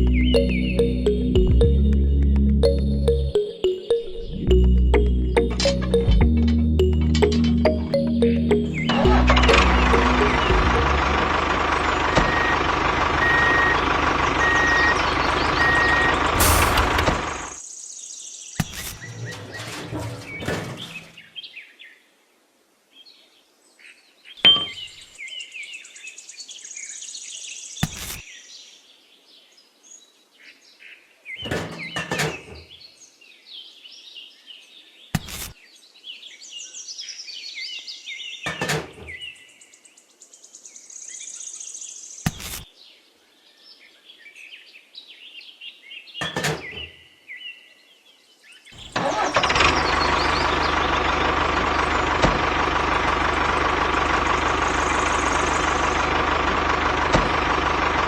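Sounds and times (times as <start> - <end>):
birds chirping: 0.0 - 21.6, 48.6 - 58.0.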